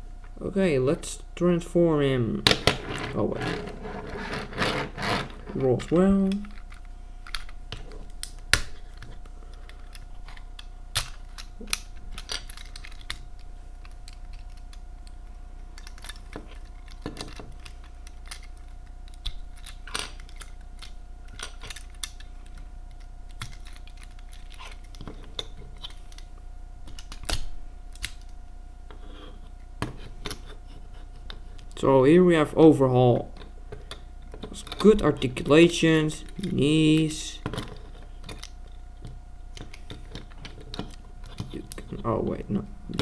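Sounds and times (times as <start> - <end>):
faint steady hum: 0.0 - 43.0
plastic toy parts clicking: 9.8 - 13.2, 15.8 - 22.6.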